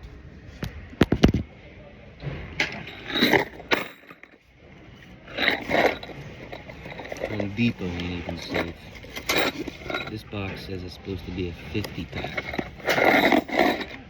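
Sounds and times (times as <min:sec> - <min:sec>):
loose screws rattling: 0:02.6 - 0:04.4, 0:05.2 - 0:10.3, 0:11.8 - 0:14.0.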